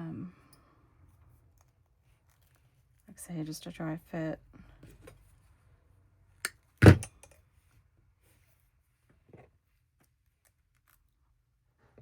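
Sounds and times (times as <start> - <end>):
dull thump on work surface: 6.8 - 7.1.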